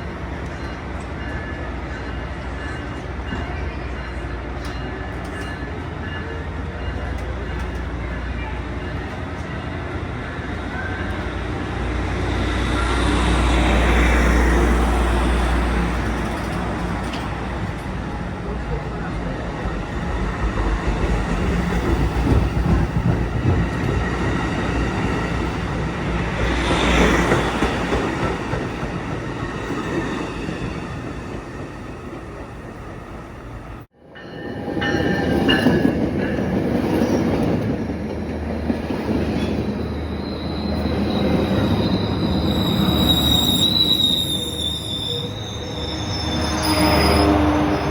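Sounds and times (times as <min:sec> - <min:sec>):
train rumbling on rails: 0:00.0 - 0:47.9
high-pitched wheel squeal: 0:39.4 - 0:47.9.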